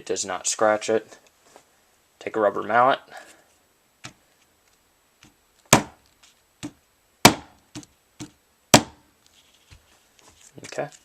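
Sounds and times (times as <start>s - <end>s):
rubber mallet striking knife: 5.7s - 6.0s, 6.6s - 9.0s.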